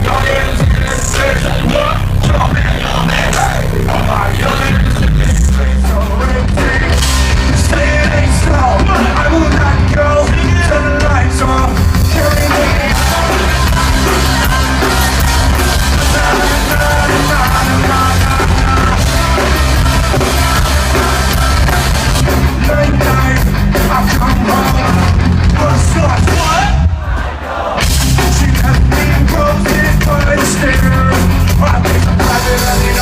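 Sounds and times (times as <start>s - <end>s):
person rapping and shouting: 0.0s - 7.0s, 22.6s - 27.0s
live hip hop and rock music: 0.0s - 33.0s.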